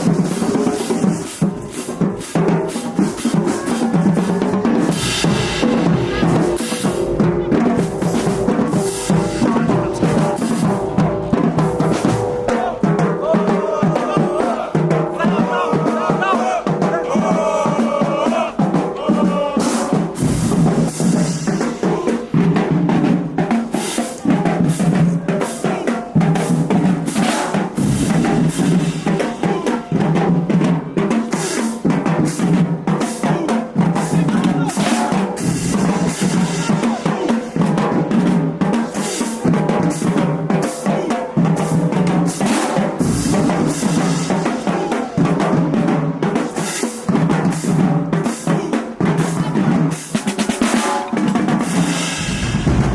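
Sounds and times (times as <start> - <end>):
bass drums: 0.0 - 23.5, 51.3 - 52.9
snare drums: 0.0 - 52.9
cymbal crashes: 4.8 - 10.9, 51.7 - 52.9.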